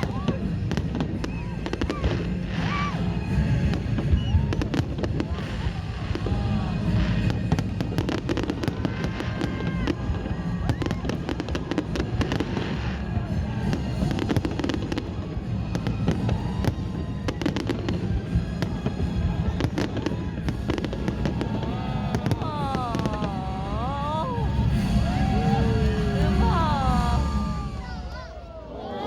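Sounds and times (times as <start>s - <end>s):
fireworks bangs and crackles: 0.0s - 28.4s
low rumble: 19.2s - 28.5s.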